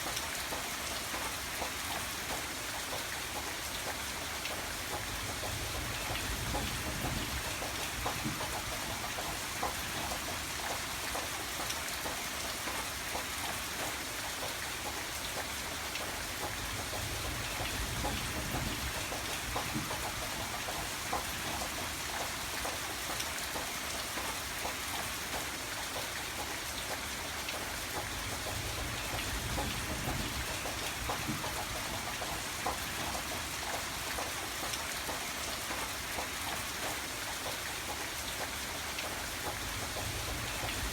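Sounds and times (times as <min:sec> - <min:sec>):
raindrops pattering: 0:00.0 - 0:40.9.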